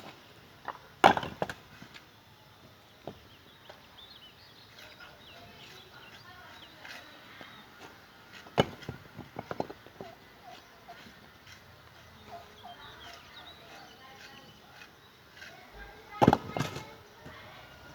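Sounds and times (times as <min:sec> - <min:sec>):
faint birds chirping: 0:00.0 - 0:17.9.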